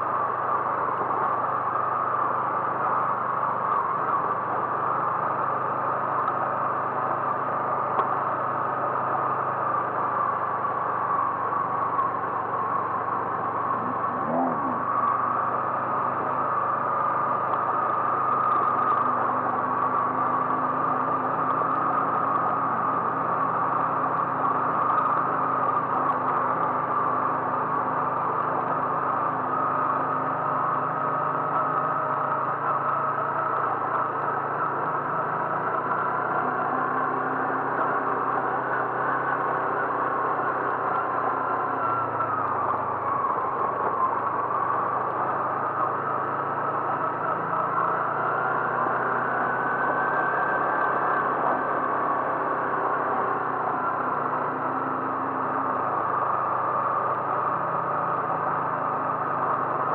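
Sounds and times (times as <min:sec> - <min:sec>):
car engine drone: 0:00.0 - 0:59.9
road noise: 0:00.0 - 0:59.9.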